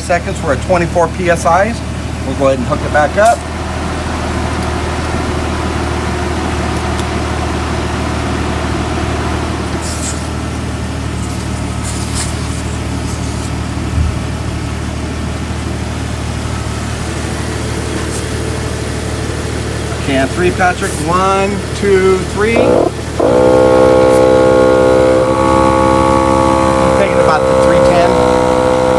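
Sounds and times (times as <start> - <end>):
low mechanical hum: 0.0 - 28.9
short air hisses: 9.8 - 10.4, 11.2 - 13.6, 18.0 - 18.6
thump: 14.0 - 14.2.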